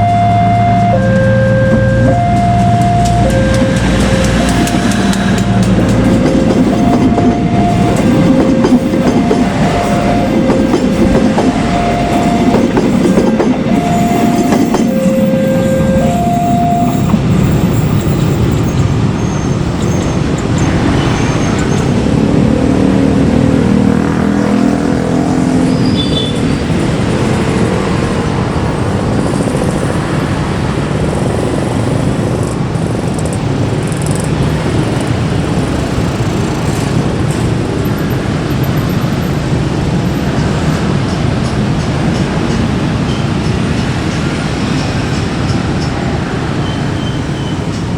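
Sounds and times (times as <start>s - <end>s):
level crossing two-note alarm: 0.0s - 17.3s
train rumbling past: 0.0s - 47.9s
clacking train wheels: 0.8s - 47.9s.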